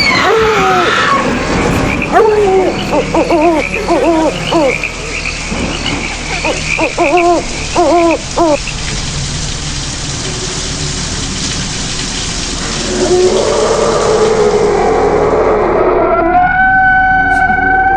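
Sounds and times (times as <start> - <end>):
insects chirping: 0.9 - 10.0.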